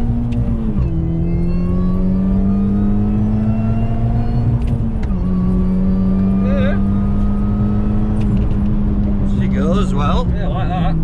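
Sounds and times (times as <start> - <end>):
car engine accelerating: 0.0 - 11.0.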